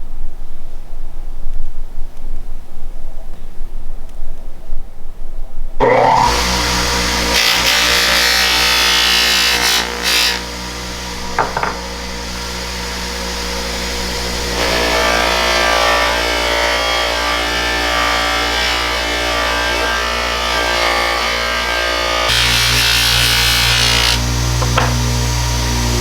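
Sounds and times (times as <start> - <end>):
small power tool on metal: 5.8 - 26.0.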